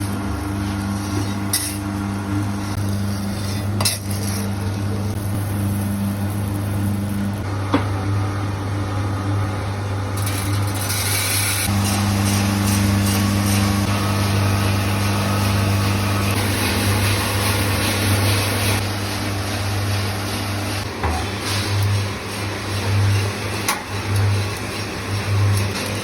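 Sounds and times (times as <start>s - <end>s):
electric motor humming: 10.3s - 26.0s.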